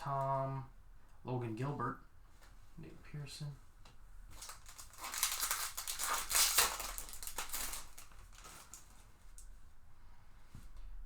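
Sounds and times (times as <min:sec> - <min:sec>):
foil wrapper tearing and crinkling: 0:04.4 - 0:09.4.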